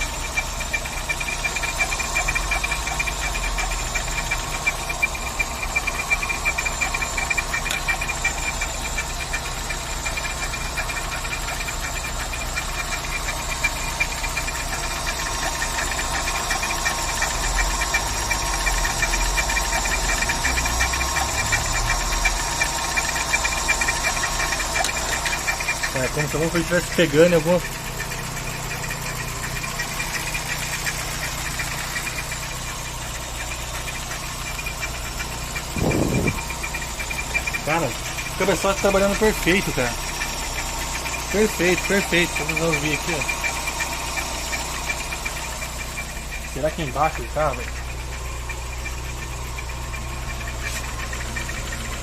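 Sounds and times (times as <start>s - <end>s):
car engine idling: 0.0s - 52.0s
rapid ticking noise: 0.0s - 52.0s
steady high whine: 34.5s - 52.0s.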